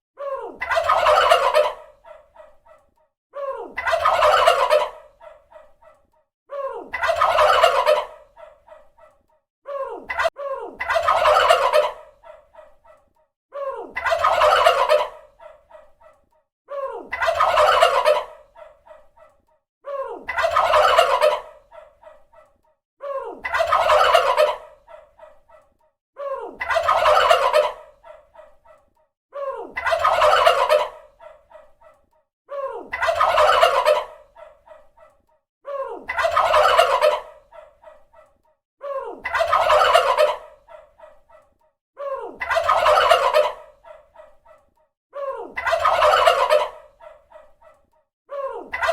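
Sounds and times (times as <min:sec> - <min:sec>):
turkey gobbling: 0:00.6 - 0:02.6, 0:03.8 - 0:06.0, 0:06.9 - 0:08.8, 0:10.2 - 0:13.0, 0:14.0 - 0:16.2, 0:17.1 - 0:19.3, 0:20.3 - 0:22.3, 0:23.4 - 0:25.6, 0:26.6 - 0:28.6, 0:29.8 - 0:31.8, 0:32.9 - 0:34.9, 0:36.1 - 0:38.0, 0:39.2 - 0:41.3, 0:42.4 - 0:44.3, 0:45.6 - 0:47.7.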